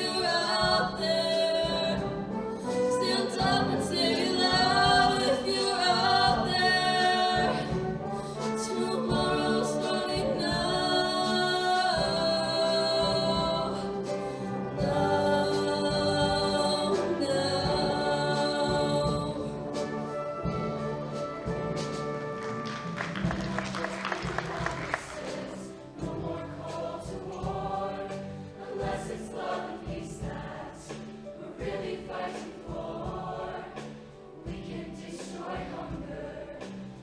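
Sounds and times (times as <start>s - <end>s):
choir singing in harmony: 0.0s - 37.0s
instrumental backing music: 0.0s - 37.0s.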